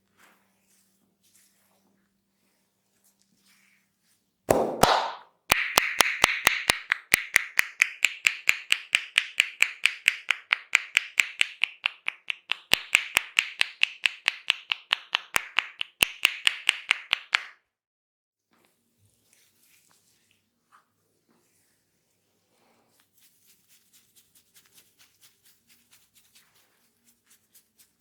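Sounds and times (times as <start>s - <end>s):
hands tapping on head: 4.5s - 17.5s.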